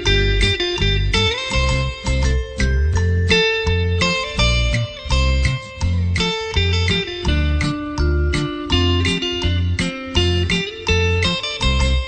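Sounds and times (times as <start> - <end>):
instrumental music with steady beat: 0.0 - 12.0.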